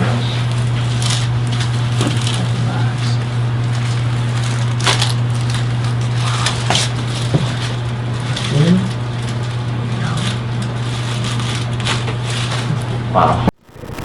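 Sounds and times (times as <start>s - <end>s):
low hum: 13.6s - 14.0s.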